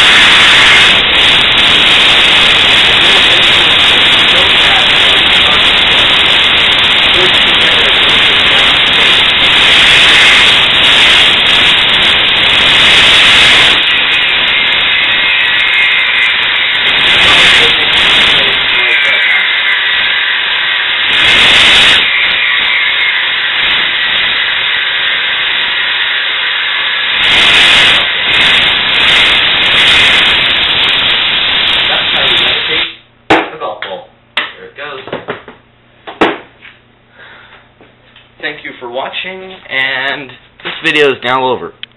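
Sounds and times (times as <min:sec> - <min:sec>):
compressed air hissing from nozzle: 0:00.0 - 0:32.9.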